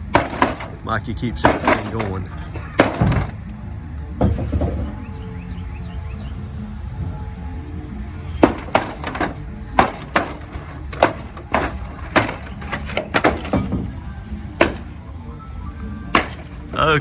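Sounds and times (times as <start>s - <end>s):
hammer striking wood: 0.0s - 0.8s, 1.4s - 5.1s, 8.4s - 15.1s, 16.1s - 17.0s
steady low hum: 0.0s - 17.0s.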